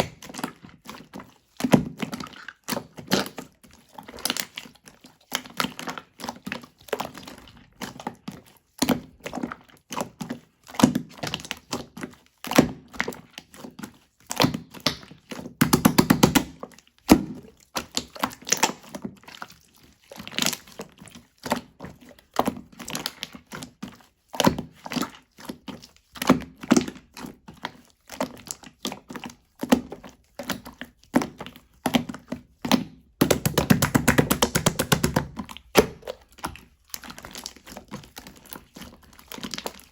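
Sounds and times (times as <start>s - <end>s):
slime sticky pops and clicks: 15.6s - 16.5s, 33.2s - 36.1s.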